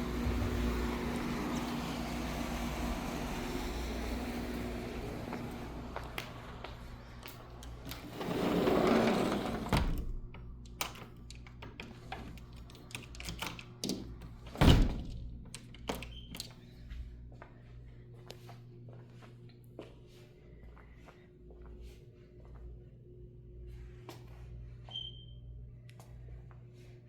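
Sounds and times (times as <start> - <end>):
outdoor noise: 0.0 - 9.7
sliding door rolling and clicking shut: 0.0 - 16.1.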